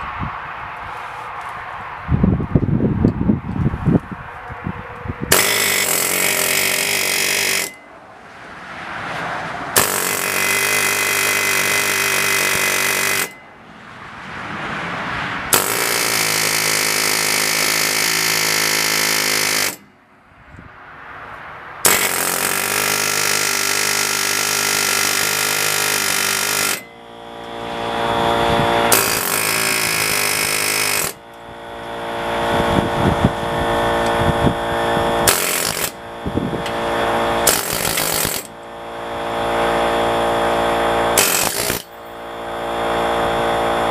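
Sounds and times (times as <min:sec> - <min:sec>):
pneumatic air hammer hammering metal: 0:05.3 - 0:07.9, 0:09.7 - 0:13.5, 0:15.5 - 0:20.0, 0:21.8 - 0:43.9.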